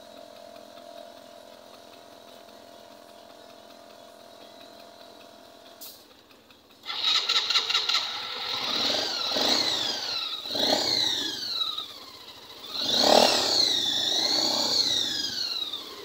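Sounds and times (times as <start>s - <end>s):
motorcycle engine revving: 6.8s - 16.0s.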